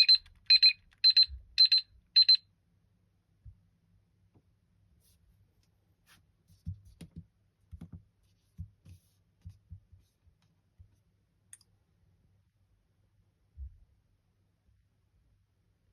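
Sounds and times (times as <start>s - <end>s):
faint clicks and soft thumps: 6.5s - 11.8s.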